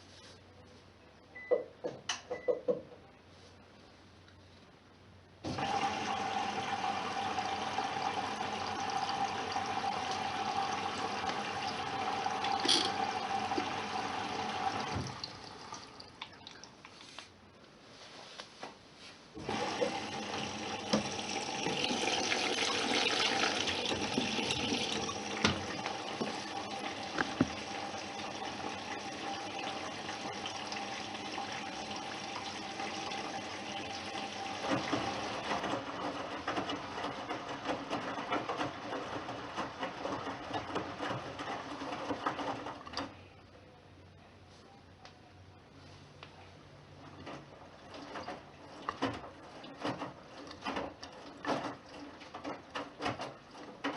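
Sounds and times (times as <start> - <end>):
water rushing into washing machine: 5.4 - 16.8, 19.4 - 43.2, 47.0 - 53.9.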